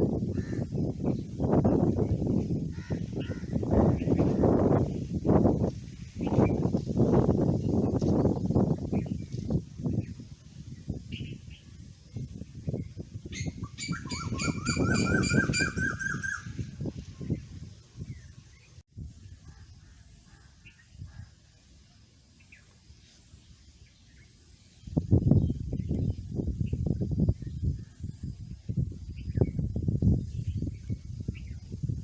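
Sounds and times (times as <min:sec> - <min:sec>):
bird calling rising notes: 0:13.6 - 0:16.6.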